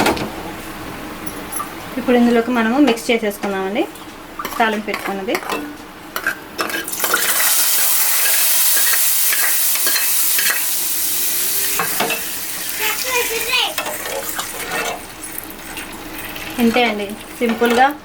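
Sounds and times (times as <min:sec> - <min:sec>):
hot oil sizzling: 0:06.6 - 0:18.0.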